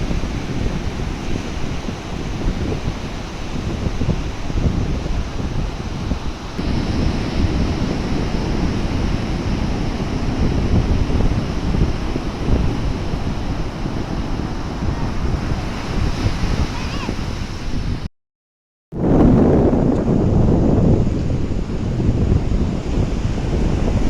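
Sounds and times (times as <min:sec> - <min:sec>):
sea waves washing: 0:00.0 - 0:18.1, 0:20.0 - 0:24.0
wind buffeting microphone: 0:00.0 - 0:18.1, 0:18.9 - 0:24.0.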